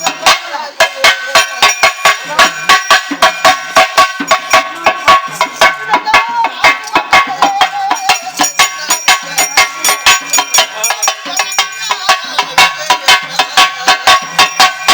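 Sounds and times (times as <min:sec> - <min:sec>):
drums beating fast rhythm: 0:00.0 - 0:14.9.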